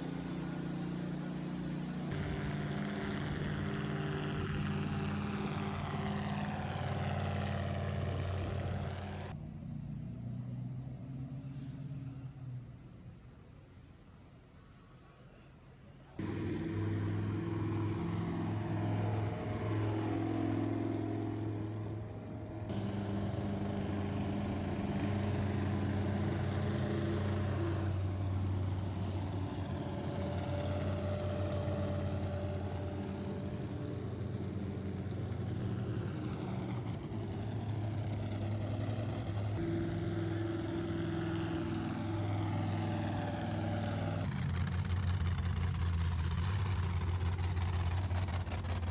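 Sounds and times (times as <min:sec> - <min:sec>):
car engines running: 0:00.0 - 0:10.6, 0:16.2 - 0:48.9.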